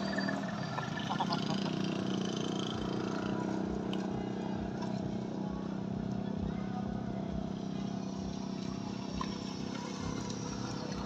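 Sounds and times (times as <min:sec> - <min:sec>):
motor humming: 0:06.8 - 0:11.0.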